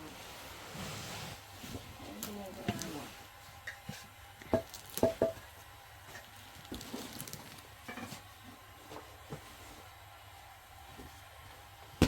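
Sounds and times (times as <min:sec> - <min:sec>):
hard objects knocking with ringing: 0:04.5 - 0:05.4.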